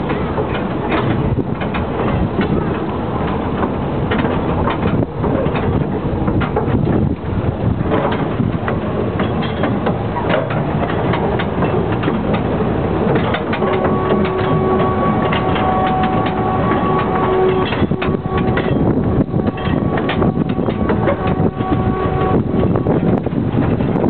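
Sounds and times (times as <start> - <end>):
train rattling on track: 0.0 - 24.0
steady tone: 11.6 - 24.0.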